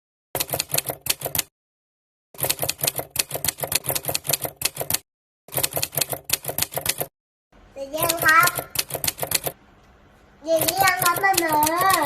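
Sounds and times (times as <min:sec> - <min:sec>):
rapid key clicks: 0:00.4 - 0:01.5, 0:02.4 - 0:07.1, 0:08.0 - 0:09.6, 0:10.5 - 0:12.0.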